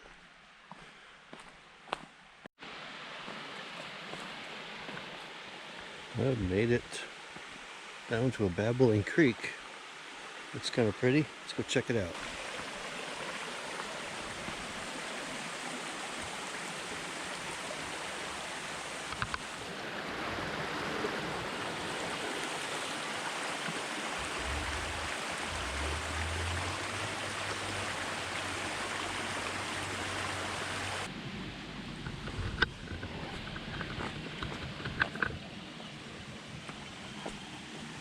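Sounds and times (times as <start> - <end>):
creek water rushing: 2.6 - 31.2, 32.2 - 38.0
low rumble: 24.2 - 28.6.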